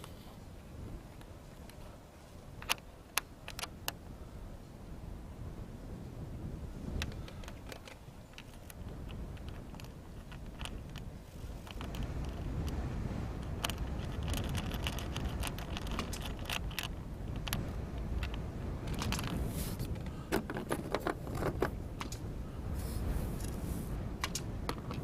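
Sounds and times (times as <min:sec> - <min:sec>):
steady low rumble: 0:00.0 - 0:25.0
clicks and rattles of small parts: 0:02.6 - 0:04.0, 0:07.0 - 0:12.8, 0:13.4 - 0:22.2, 0:24.2 - 0:25.0.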